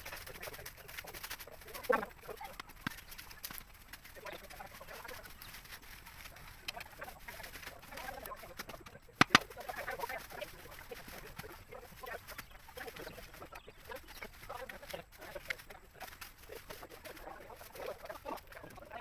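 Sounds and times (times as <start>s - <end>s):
sharp clicks: 0.0s - 10.1s
birds calling: 0.0s - 19.0s.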